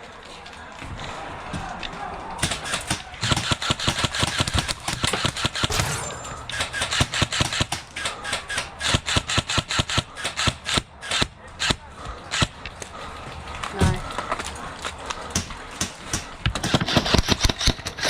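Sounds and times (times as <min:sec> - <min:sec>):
airsoft guns firing: 0:02.4 - 0:12.7, 0:15.2 - 0:18.0.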